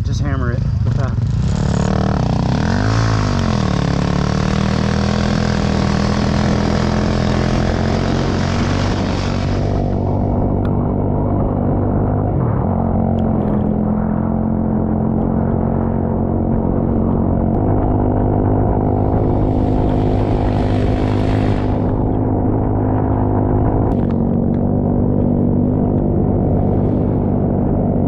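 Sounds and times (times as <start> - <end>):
engine running under load: 0.7 - 28.0
hissing noise: 18.8 - 22.4.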